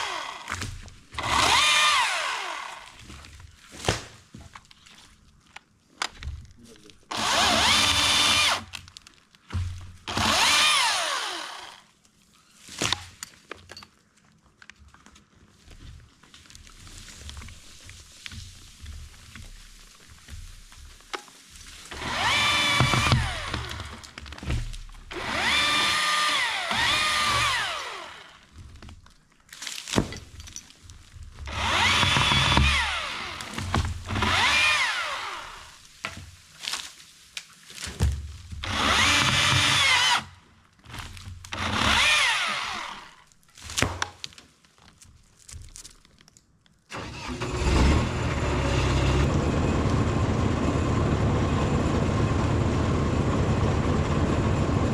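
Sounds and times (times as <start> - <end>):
electric chainsaw cutting wood: 0.0 - 3.1, 7.1 - 8.8, 10.0 - 11.9, 21.9 - 28.5, 31.5 - 35.8, 38.6 - 40.4, 41.0 - 43.2, 46.9 - 54.9.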